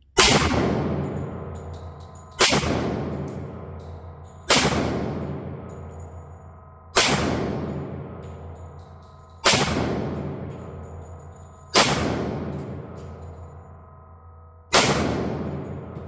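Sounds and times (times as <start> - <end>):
pistol shots with echo: 0.2 - 6.0, 7.0 - 8.6, 9.4 - 10.9, 11.7 - 13.4, 14.7 - 16.0.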